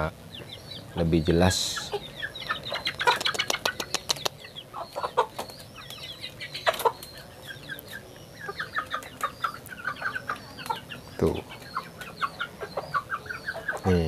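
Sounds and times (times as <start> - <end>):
chickens clucking: 0.0 - 14.0
sharp clicks: 3.1 - 4.4.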